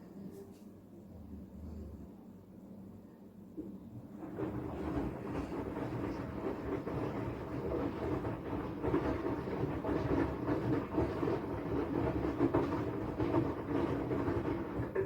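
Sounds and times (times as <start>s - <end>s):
washing machine running: 3.6s - 15.0s.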